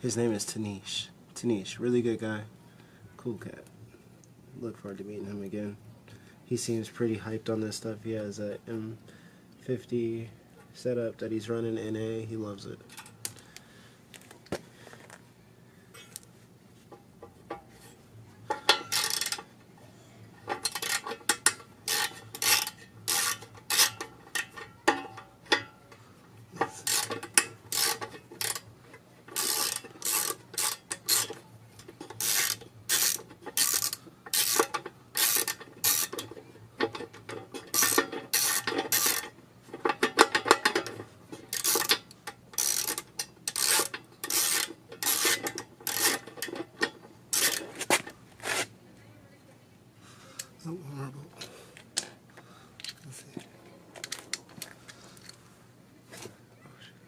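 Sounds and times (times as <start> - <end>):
ratchet wrench clicking: 18.7 - 19.4, 20.6 - 24.6, 26.8 - 28.6, 29.3 - 31.4, 32.1 - 36.4, 37.7 - 39.3, 41.5 - 46.6, 47.3 - 47.7.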